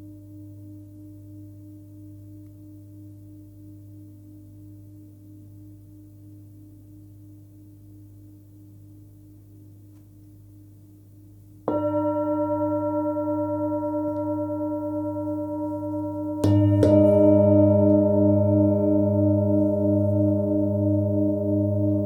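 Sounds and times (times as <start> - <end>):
singing bowl ringing: 11.7 - 22.0
singing bowl strike: 11.7 - 22.0.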